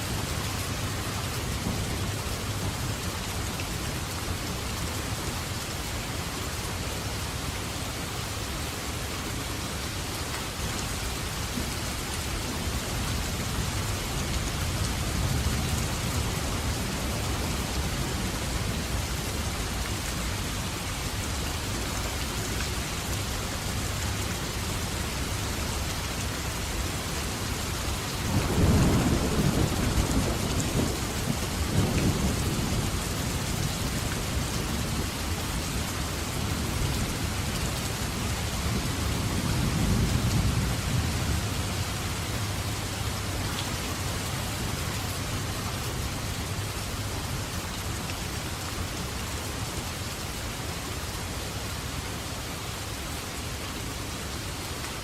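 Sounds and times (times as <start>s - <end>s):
heavy rain falling: 0.0s - 55.0s
low rumble of thunder: 28.2s - 42.8s.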